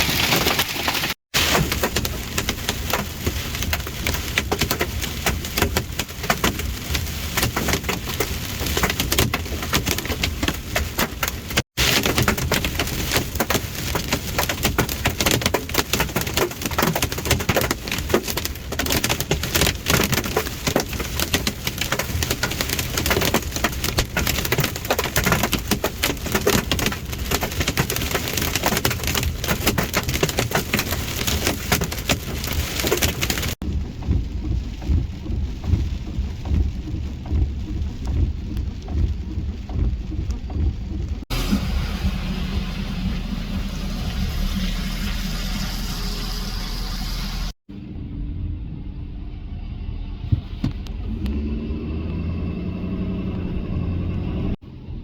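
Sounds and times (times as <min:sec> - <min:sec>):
rain and hail on vehicle: 0:00.0 - 0:45.4
low rumble: 0:33.6 - 0:55.0.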